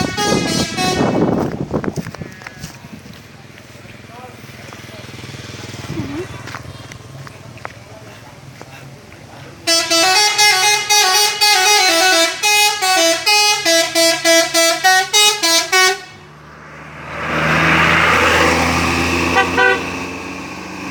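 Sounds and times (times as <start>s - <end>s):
musical air horn tune: 0.0s - 1.4s, 9.7s - 16.2s, 19.3s - 19.9s
short horn toots: 0.0s - 1.4s, 19.3s - 19.9s
rushing noise with engine hum: 0.0s - 20.9s.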